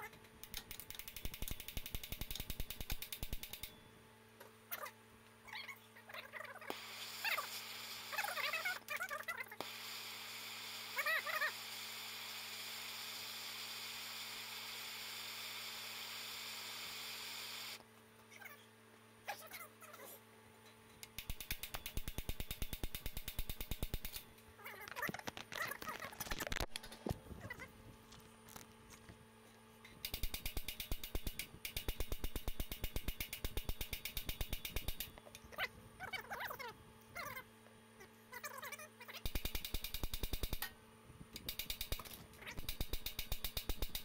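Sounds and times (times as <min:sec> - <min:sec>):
low electrical hum: 0:00.0 - 0:44.0
ratchet wrench clicking: 0:00.4 - 0:03.7, 0:21.0 - 0:24.2, 0:30.0 - 0:35.1, 0:39.3 - 0:40.7, 0:41.4 - 0:44.0.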